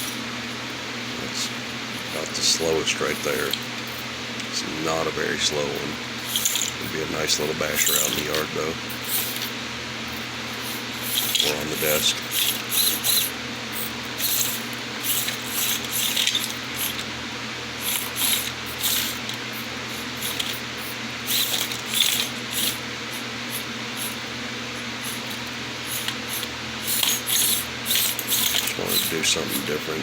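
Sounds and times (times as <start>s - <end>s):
small electric motor whirring: 6.2s - 30.0s.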